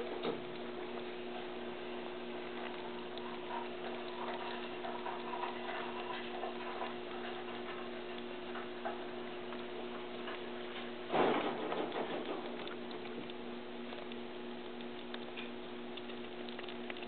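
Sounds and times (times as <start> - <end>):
squirrels gnawing nut shells: 0.0 - 17.0
steady low hum: 0.0 - 17.0.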